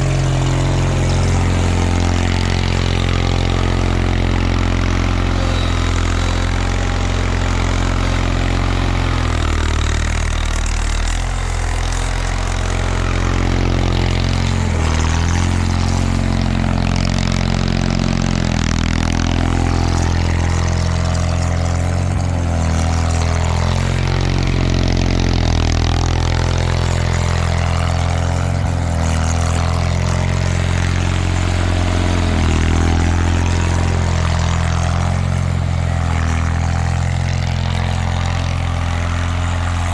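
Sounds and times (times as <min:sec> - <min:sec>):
tractor engine running under load: 0:00.0 - 0:39.9.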